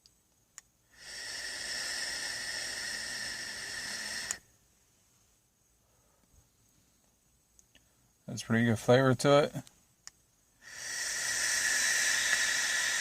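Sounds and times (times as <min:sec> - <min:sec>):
vape coil hissing and sizzling: 0:00.9 - 0:04.5, 0:10.6 - 0:13.0.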